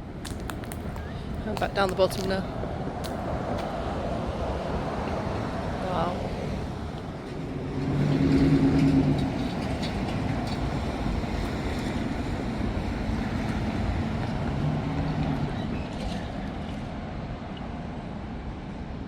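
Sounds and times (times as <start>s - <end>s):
low engine hum: 0.0s - 18.8s
roar of passing vehicles: 2.7s - 16.6s.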